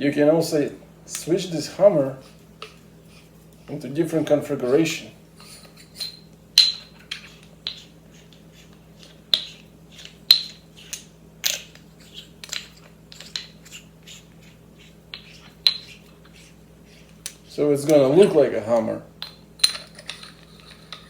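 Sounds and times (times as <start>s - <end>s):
metal tool parts clicking and clinking: 10.3s - 13.8s.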